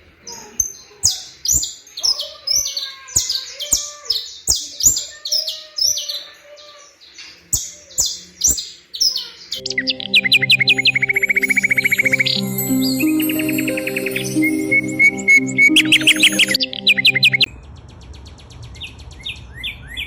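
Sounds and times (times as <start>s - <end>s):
music with held low notes: 9.6s - 17.5s.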